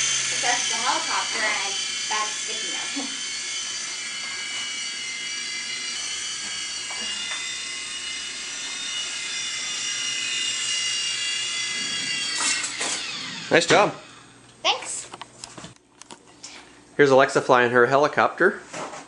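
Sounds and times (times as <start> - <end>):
small helicopter motor whine: 0.0 - 15.1.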